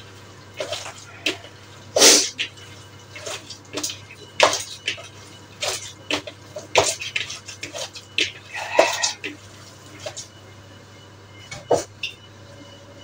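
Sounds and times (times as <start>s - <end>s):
hands kneading wet meat: 2.3s - 10.3s.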